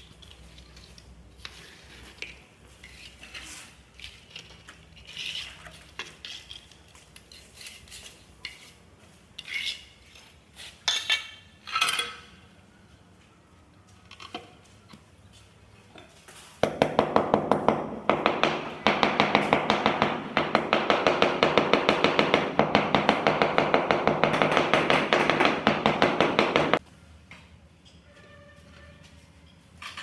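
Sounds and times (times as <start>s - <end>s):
rapid tapping on tiles: 16.6s - 26.8s.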